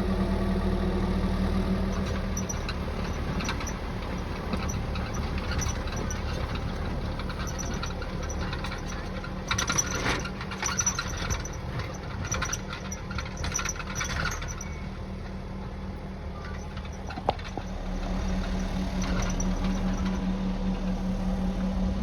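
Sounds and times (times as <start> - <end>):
tractor engine running: 0.0 - 22.0
clicking and rattling: 1.9 - 15.4, 16.4 - 20.3.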